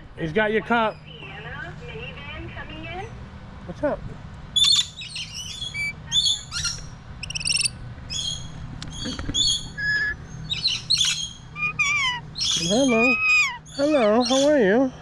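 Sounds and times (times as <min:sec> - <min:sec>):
parrots chirping and screeching: 0:04.6 - 0:14.7.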